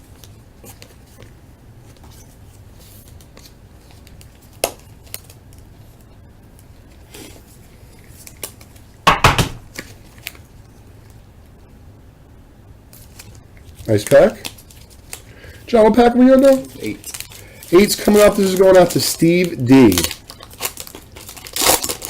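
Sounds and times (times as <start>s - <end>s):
knocks on a table: 9.1s - 9.6s
cards being handled: 12.9s - 22.0s.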